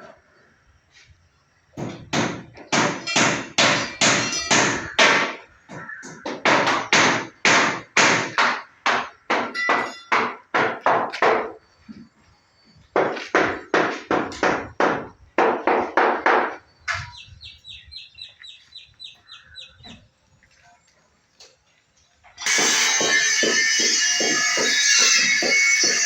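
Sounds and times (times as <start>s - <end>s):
hammer striking formwork: 1.8s - 5.4s, 22.4s - 26.0s.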